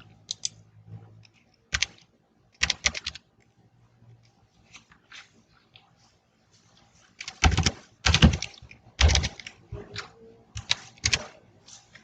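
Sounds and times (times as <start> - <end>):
typing on laptop keyboard: 1.3 - 3.3, 7.2 - 9.6, 10.6 - 11.4.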